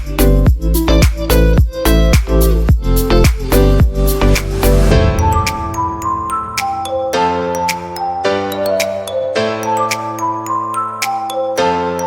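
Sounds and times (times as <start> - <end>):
electronic dance music: 0.9 - 9.1
bell-like tones: 4.9 - 11.0.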